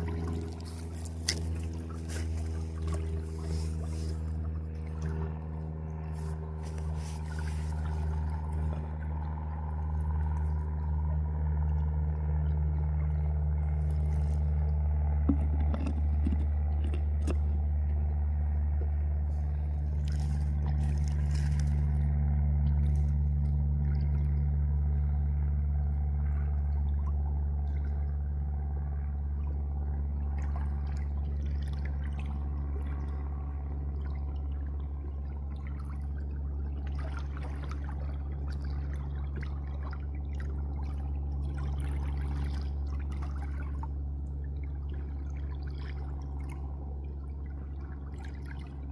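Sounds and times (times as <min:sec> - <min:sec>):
water trickling and pouring: 0:00.0 - 0:10.9
motor humming: 0:00.0 - 0:48.9.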